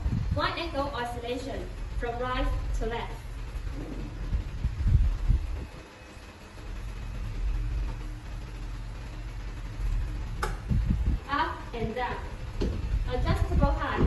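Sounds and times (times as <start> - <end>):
faint motor hum: 0.0 - 14.0
fan air rumble: 0.0 - 14.0
fan click: 9.6 - 14.0.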